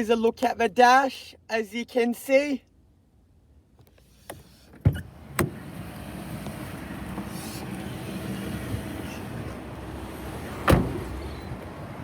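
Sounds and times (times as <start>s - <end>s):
car door shutting: 4.3s - 11.7s.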